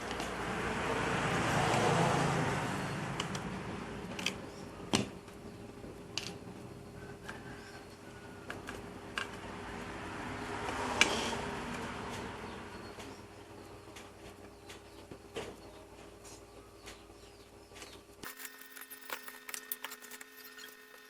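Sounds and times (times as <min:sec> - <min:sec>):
small hard objects clicking: 0:18.2 - 0:21.0.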